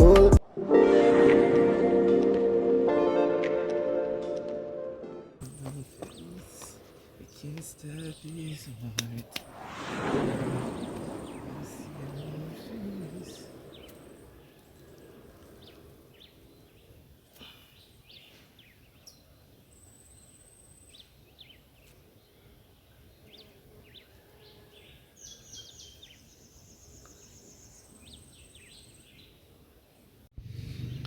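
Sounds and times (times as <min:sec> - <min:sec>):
bird chirps: 0:05.4 - 0:22.0, 0:23.2 - 0:29.4
background hiss: 0:05.4 - 0:24.4.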